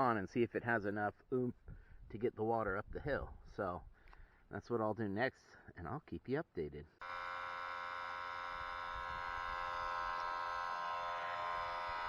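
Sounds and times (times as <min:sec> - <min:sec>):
electric pump buzzing hum: 0:07.0 - 0:12.0.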